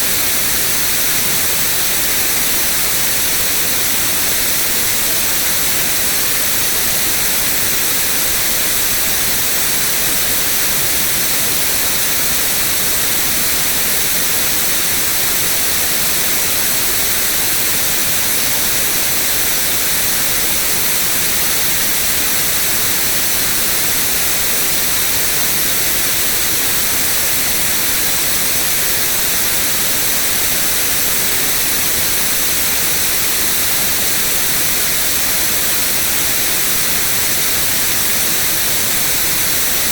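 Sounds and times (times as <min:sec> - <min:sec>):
steady white noise hiss: 0:00.0 - 0:39.9.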